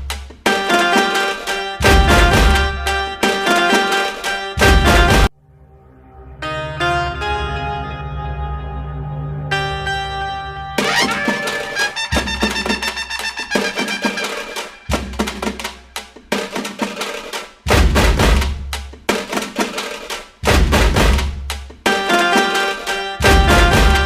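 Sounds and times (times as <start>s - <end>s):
percussive background music: 0.0s - 5.3s, 10.8s - 24.0s.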